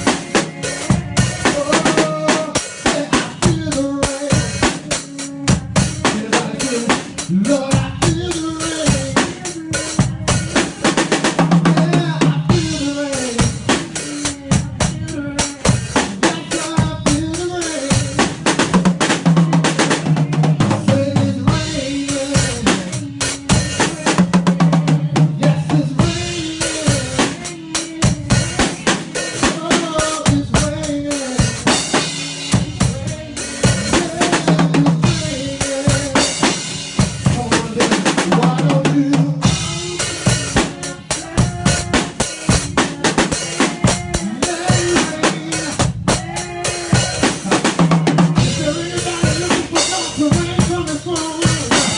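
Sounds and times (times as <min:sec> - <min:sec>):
drum kit groove: 0:00.0 - 0:51.9.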